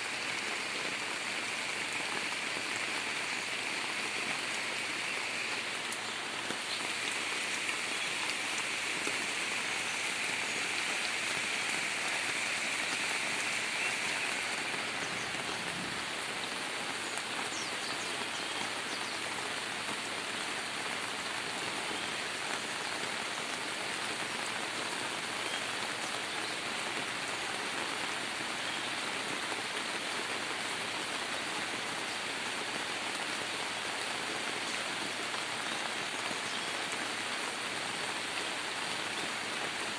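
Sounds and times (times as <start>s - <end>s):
higher hiss: 0.0s - 16.6s
heavy rain falling: 0.0s - 39.9s.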